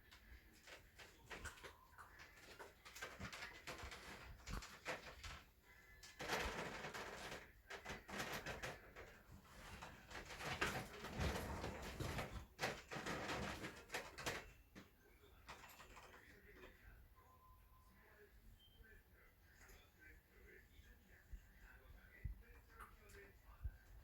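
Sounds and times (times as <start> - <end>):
cats rustling and scuffling: 0.0 - 16.8.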